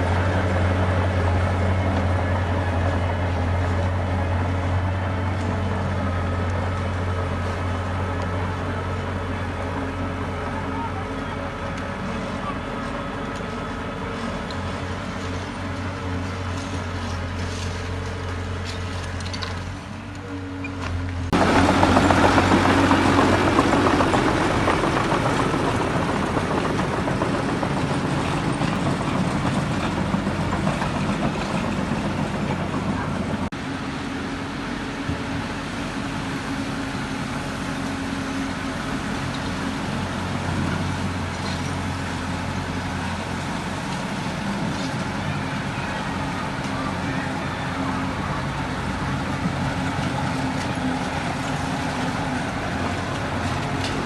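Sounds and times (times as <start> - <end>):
diesel engine drone: 0.0 - 54.0
heavy machinery grinding rumble: 0.0 - 54.0.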